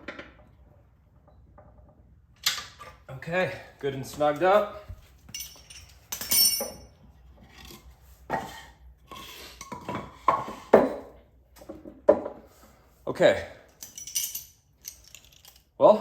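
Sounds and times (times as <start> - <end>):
metal tools clinking: 5.2 - 7.0, 13.7 - 15.8.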